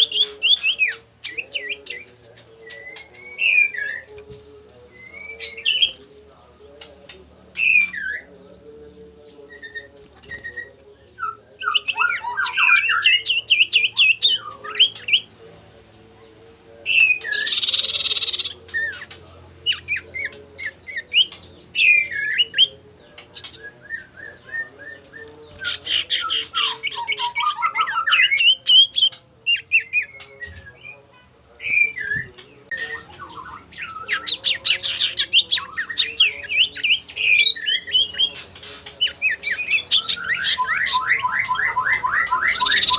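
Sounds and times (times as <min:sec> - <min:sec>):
bird chirping and whistling: 0:31.7 - 0:42.9.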